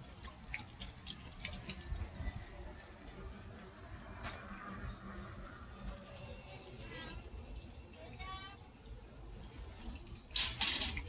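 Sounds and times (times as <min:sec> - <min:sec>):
water drips: 0:00.0 - 0:04.8
water splashing and trickling: 0:00.0 - 0:11.0.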